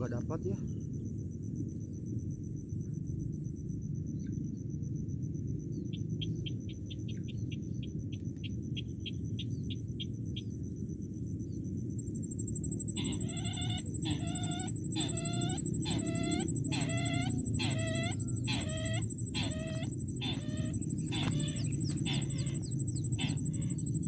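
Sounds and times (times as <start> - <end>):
steady high whine: 8.3 - 24.0
bird harsh calls: 12.8 - 24.0.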